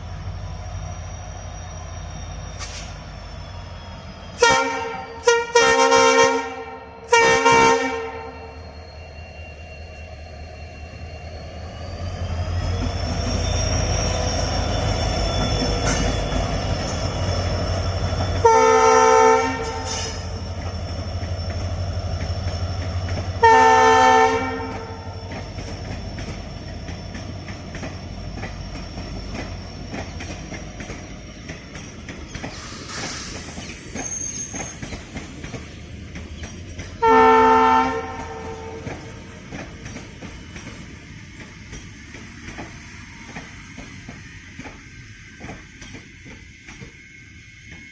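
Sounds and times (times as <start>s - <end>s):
diesel locomotive engine rumble: 0.0s - 47.9s
train wheels clicking over rail joints: 2.5s - 3.2s, 12.1s - 18.5s, 19.6s - 23.4s, 24.4s - 37.2s, 37.8s - 47.9s
train horn blasts: 4.4s - 8.5s, 18.4s - 20.0s, 23.4s - 25.2s, 37.0s - 39.0s.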